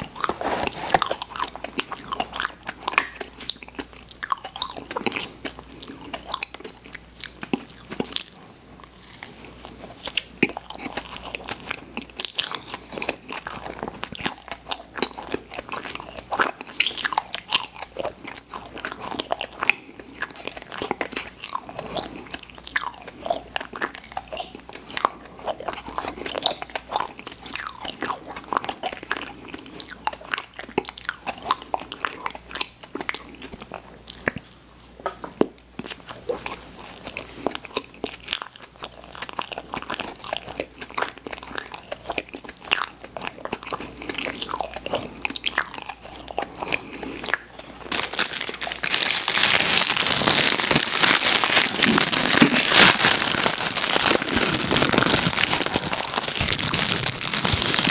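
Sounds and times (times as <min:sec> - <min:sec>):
chewing crunchy candy: 0:00.0 - 0:57.9
dense crackling: 0:47.9 - 0:57.9.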